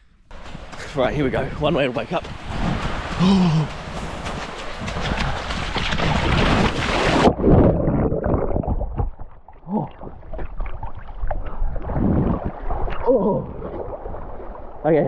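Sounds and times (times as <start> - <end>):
splashing water: 0.4 - 15.0
underwater gurgling and sloshing: 3.8 - 15.0.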